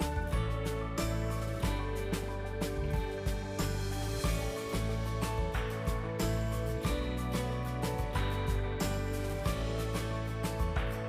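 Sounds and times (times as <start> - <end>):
instrumental background music: 0.0 - 11.0.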